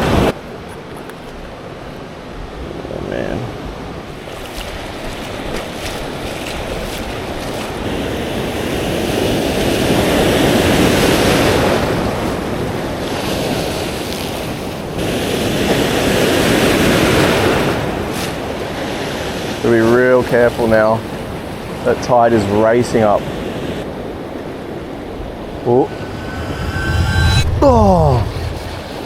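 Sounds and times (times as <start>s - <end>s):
wind rumbling on microphone: 23.6s - 29.0s.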